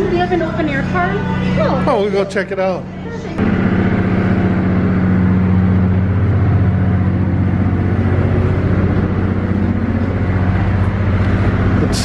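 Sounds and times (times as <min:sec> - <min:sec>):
train rumble and hum: 0:03.0 - 0:12.0.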